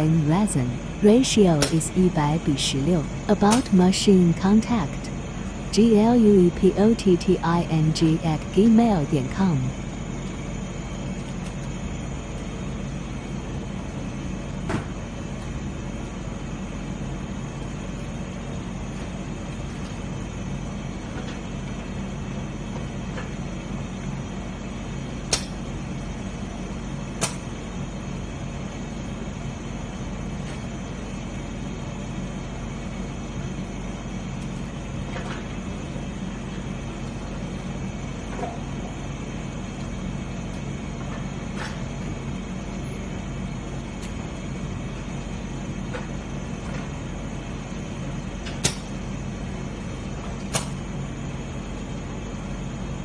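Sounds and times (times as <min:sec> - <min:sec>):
machine humming: 0:24.2 - 0:30.0.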